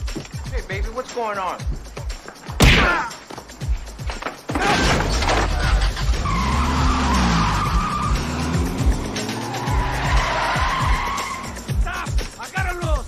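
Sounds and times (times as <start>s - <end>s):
tires squealing: 4.6s - 12.1s
car engine revving: 5.3s - 11.9s.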